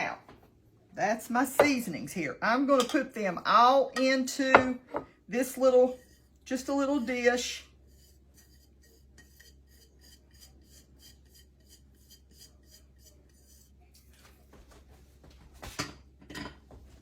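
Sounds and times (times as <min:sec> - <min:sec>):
spoon scraping and tapping: 0:07.9 - 0:13.6.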